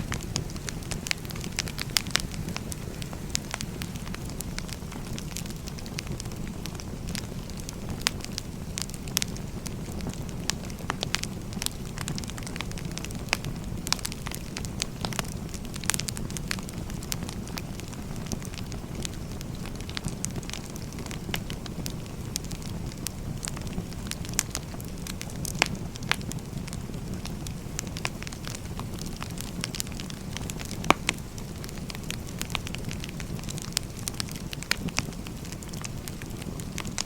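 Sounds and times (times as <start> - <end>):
wood fire crackling: 0.0 - 37.0.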